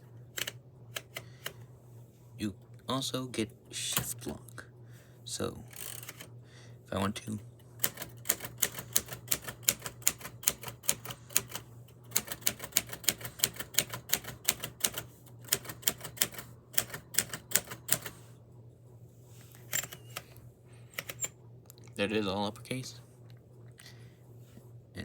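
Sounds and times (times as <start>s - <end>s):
typewriter keys striking: 7.8s - 18.1s.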